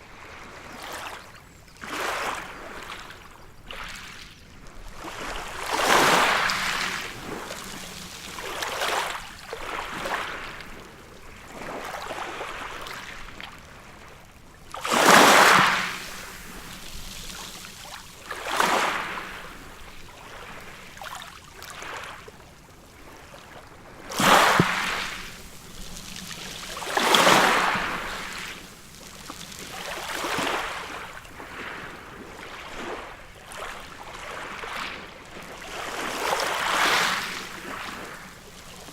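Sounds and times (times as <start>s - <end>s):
ocean waves breaking: 1.8s - 38.9s
steady surf hiss: 14.4s - 21.0s, 24.1s - 32.2s.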